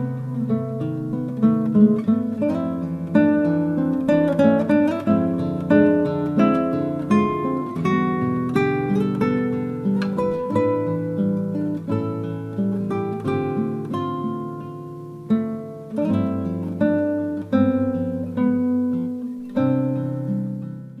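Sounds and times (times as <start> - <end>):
acoustic guitar chords: 0.0 - 21.0.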